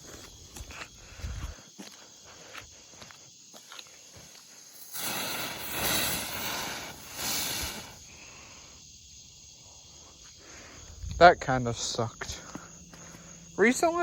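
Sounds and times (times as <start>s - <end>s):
firework spinner hissing: 4.5s - 8.5s.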